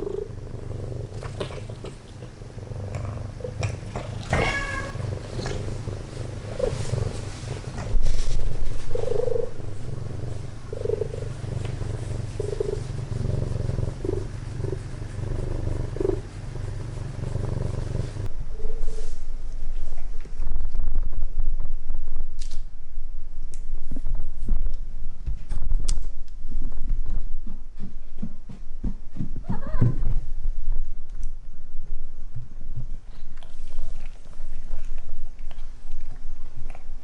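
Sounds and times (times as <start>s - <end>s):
cat purring: 0.0s - 21.6s
cat mewing: 4.3s - 5.0s.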